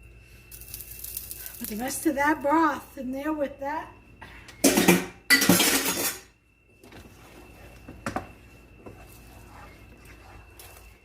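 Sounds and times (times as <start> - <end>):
pots and dishes clattering: 4.6 - 6.3.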